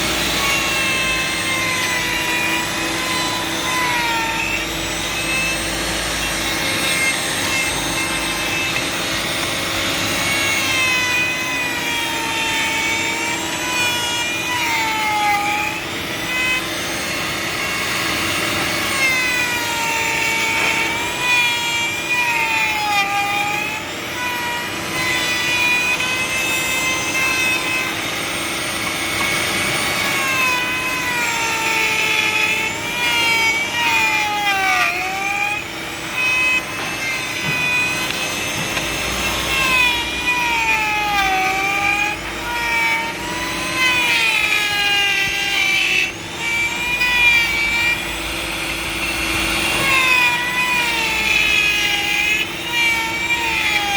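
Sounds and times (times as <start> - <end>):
power tool motor whining: 0.0 - 53.9.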